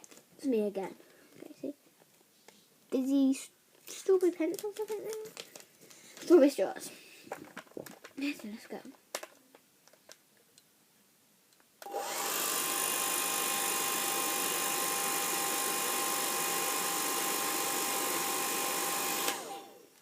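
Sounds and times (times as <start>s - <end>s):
hairdryer running: 11.8s - 20.0s.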